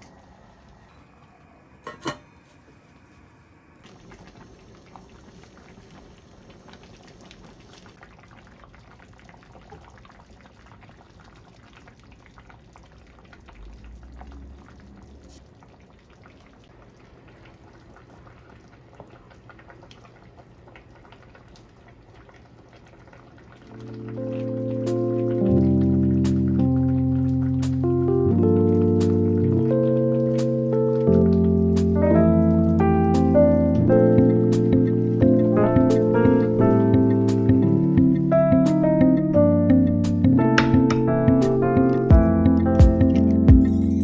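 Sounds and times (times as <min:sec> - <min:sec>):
soup bubbling as it boils: 0:03.8 - 0:24.2.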